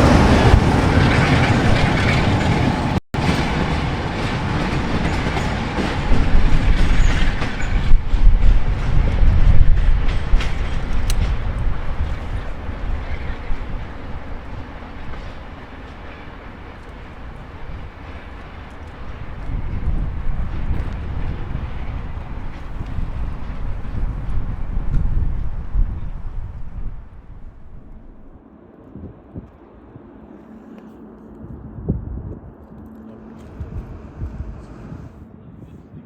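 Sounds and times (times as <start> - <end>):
train wheels clattering on rails: 0.0 - 28.3.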